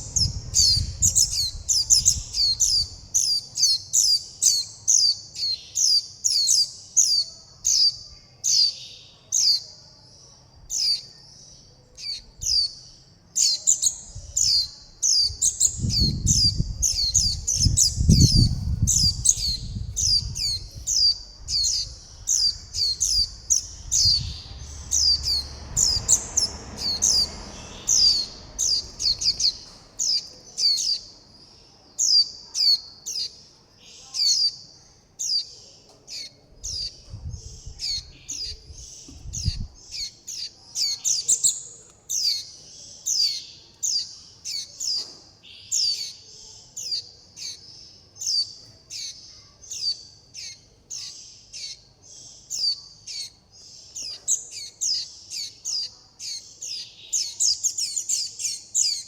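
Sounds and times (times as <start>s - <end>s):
low rumbling bursts: 0.0s - 3.1s, 15.3s - 30.2s
young birds begging calls: 0.0s - 7.9s, 12.0s - 31.1s.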